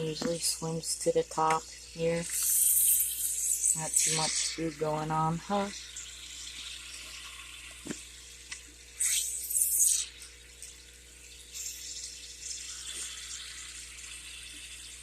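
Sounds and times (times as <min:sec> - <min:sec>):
aquarium bubbler and filter fizzing: 0:00.0 - 0:15.0
splashy hiss: 0:02.0 - 0:06.0.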